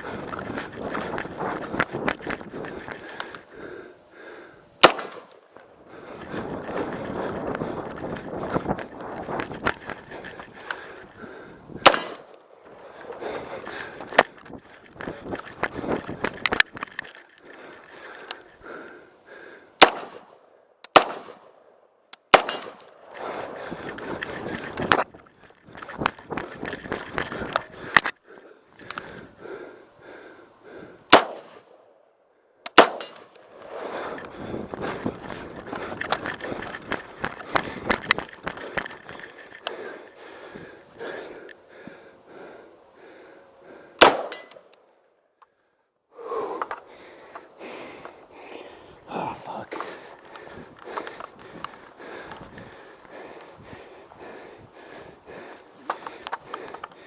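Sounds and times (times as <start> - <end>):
rifle single shots: 4.8 - 5.4, 11.8 - 12.3, 19.8 - 20.3, 20.9 - 21.6, 22.3 - 23.1, 31.1 - 31.8, 32.7 - 33.6, 44.0 - 44.7.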